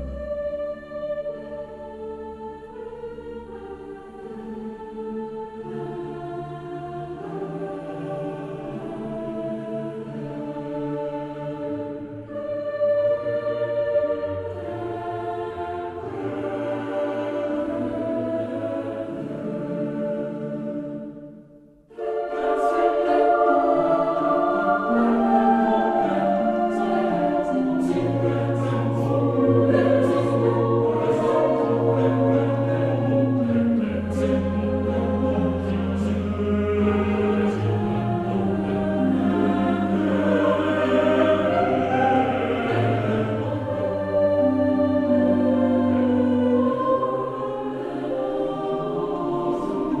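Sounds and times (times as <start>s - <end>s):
background music with held chords: 0.0s - 50.0s.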